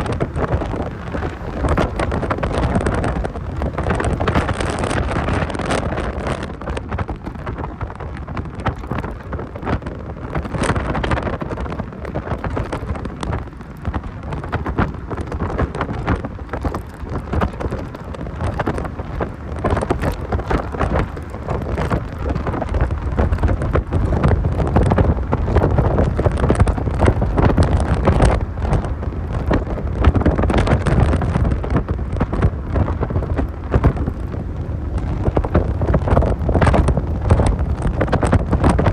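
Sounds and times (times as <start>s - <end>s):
car rumbling on the road: 0.0s - 38.9s
wind buffeting the microphone: 0.0s - 38.9s.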